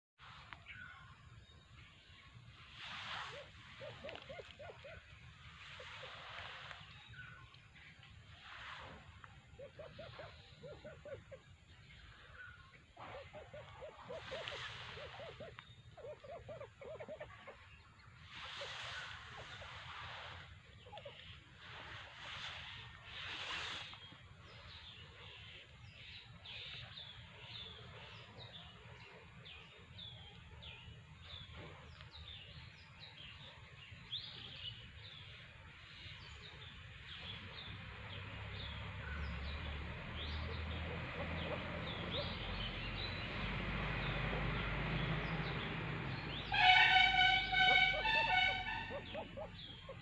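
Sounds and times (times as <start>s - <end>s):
ducklings peeping: 47.5s - 50.0s.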